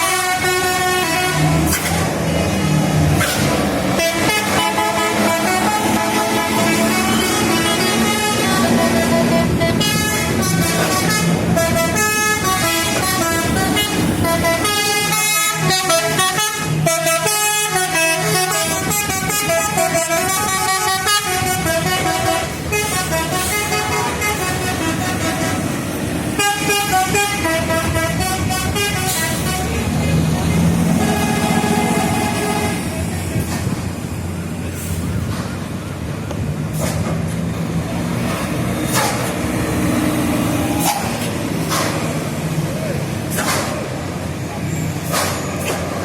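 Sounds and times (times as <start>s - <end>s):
multi-tone air horn melody: 0.0s - 1.9s, 3.9s - 30.0s, 30.6s - 33.1s.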